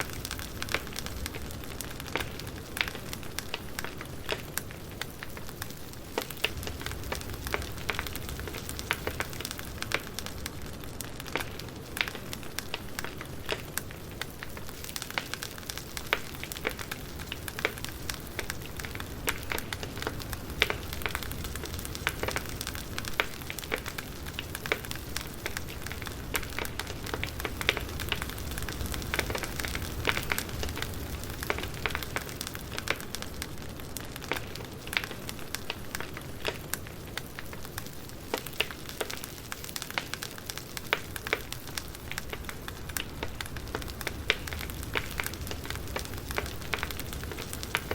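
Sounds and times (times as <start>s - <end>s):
campfire crackling and popping: 0.0s - 47.9s
flames hissing and rumbling: 0.0s - 47.9s.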